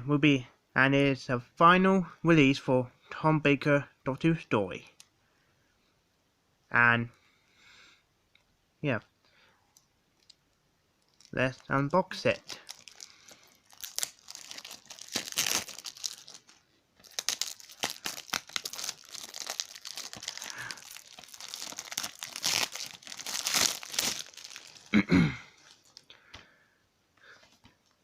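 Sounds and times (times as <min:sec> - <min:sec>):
plastic wrap crackling and tearing: 0:11.0 - 0:25.0, 0:25.6 - 0:26.1.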